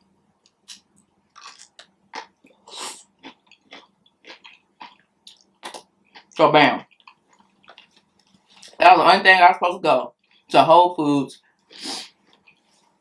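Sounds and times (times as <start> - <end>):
person chewing food: 0.4 - 8.8, 11.6 - 12.9.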